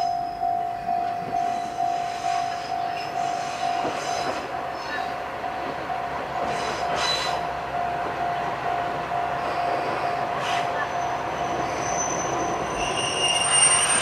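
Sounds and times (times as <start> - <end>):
train wheels squealing: 0.0 - 5.2, 6.4 - 7.5, 9.4 - 14.0
level crossing warning bell ringing: 0.0 - 14.0
train running on rails: 0.0 - 14.0.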